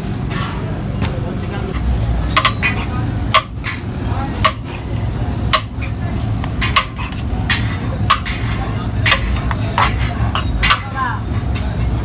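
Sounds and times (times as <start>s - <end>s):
low street rumble: 0.0s - 12.0s
utensil clinking on metal cookware: 1.4s - 12.0s.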